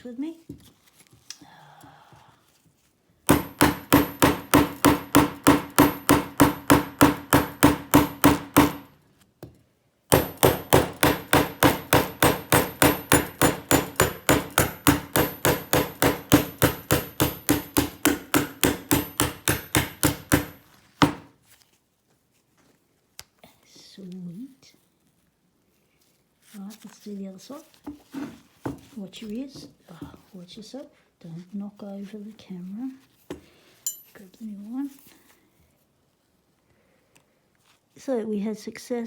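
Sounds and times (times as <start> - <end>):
rapid hammering: 3.3 - 8.9, 10.1 - 21.3.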